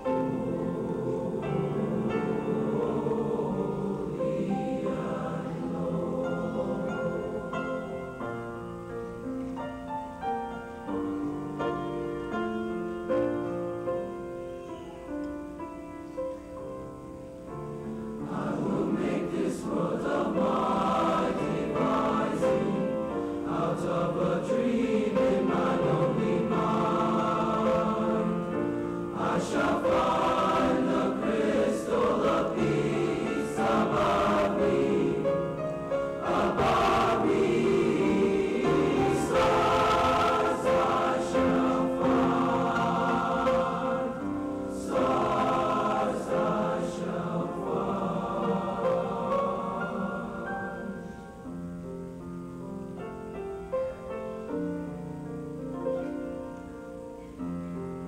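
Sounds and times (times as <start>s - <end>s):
school choir singing: 0.0s - 8.7s, 17.9s - 51.6s.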